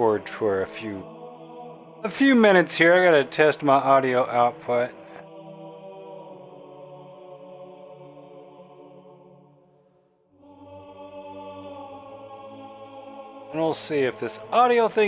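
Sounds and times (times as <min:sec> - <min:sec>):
droning chant-like music: 0:00.0 - 0:15.0.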